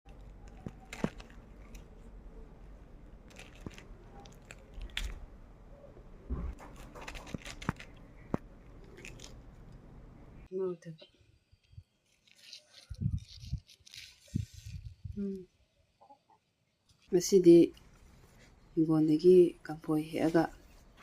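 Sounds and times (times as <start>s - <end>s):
biting and chewing crisp food: 0.1s - 2.2s, 3.3s - 5.3s, 6.6s - 9.8s, 12.0s - 15.0s.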